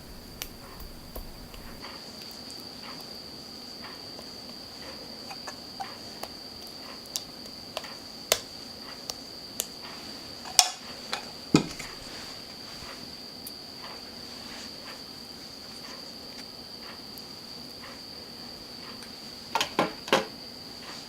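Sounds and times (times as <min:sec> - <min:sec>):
kitchenware clicks and knocks: 0:00.0 - 0:01.8.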